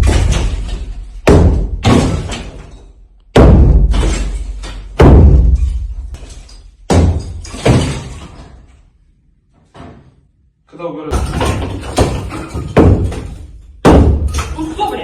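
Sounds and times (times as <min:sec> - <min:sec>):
heavy crashing impacts: 0:00.0 - 0:08.8, 0:11.1 - 0:15.0.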